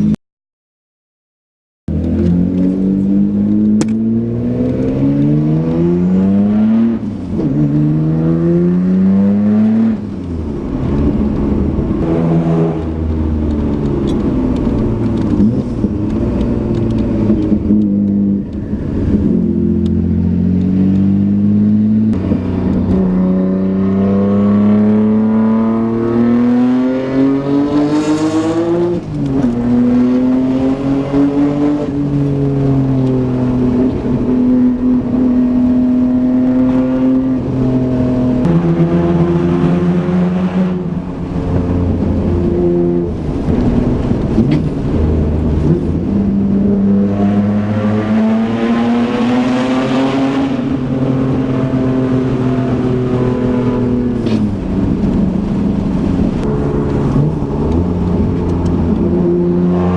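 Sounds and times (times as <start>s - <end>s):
car engine accelerating: 1.9s - 59.9s.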